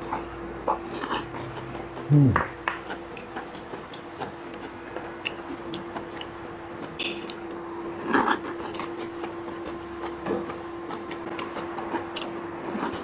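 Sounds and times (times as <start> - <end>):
steady hum: 0.0 - 13.0.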